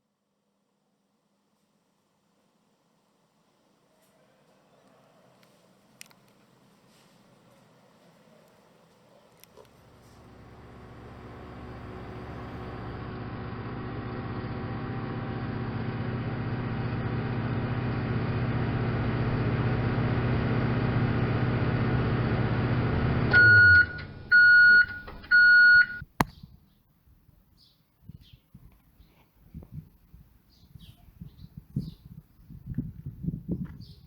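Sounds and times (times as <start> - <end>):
microwave oven humming: 9.7 - 26.0
microwave beeps: 23.3 - 26.0.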